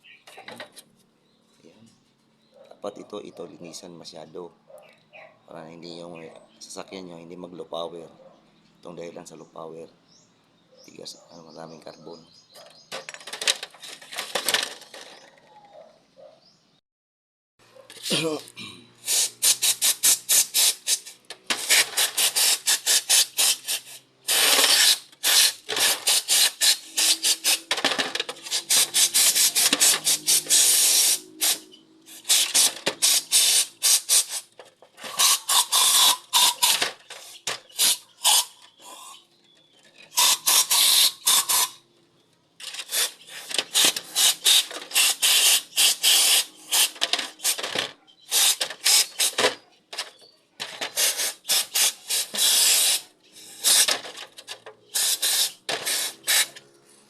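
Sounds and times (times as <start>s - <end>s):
tool scraping carbon deposits: 17.9s - 41.8s, 42.6s - 56.6s.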